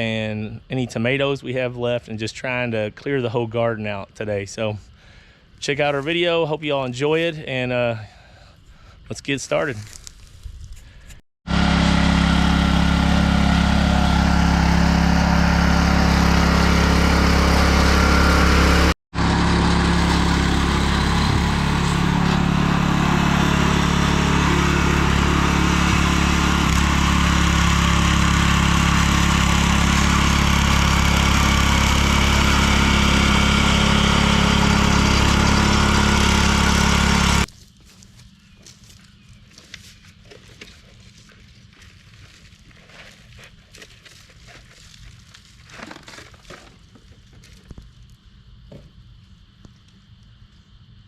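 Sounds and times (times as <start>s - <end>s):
small engine running: 11.5s - 37.5s.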